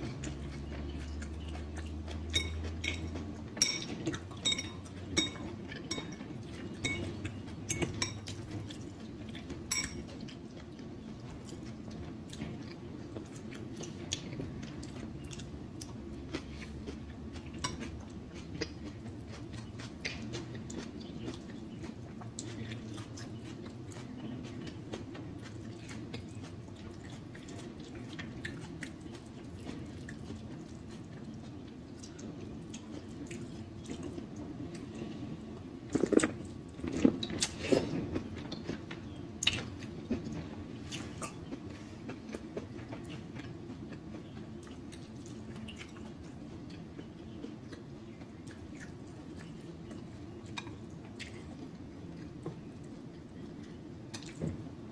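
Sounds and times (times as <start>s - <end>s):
close chewing: 0.0s - 54.9s
cutlery clinking on dishes: 2.3s - 8.8s, 9.7s - 10.2s.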